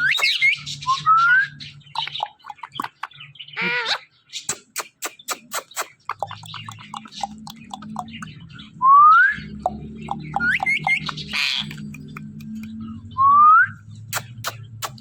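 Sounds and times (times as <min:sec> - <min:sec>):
parrot chirps: 0:00.0 - 0:08.3, 0:09.6 - 0:12.8
parrot clicking: 0:02.0 - 0:03.1, 0:04.5 - 0:08.3, 0:09.6 - 0:12.8, 0:14.1 - 0:15.0
parrot whistling: 0:10.3 - 0:11.8.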